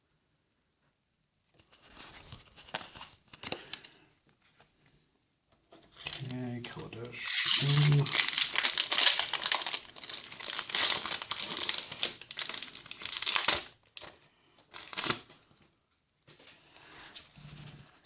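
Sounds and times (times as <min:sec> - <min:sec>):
foil wrapper crinkling: 0:01.7 - 0:04.6, 0:05.9 - 0:15.5.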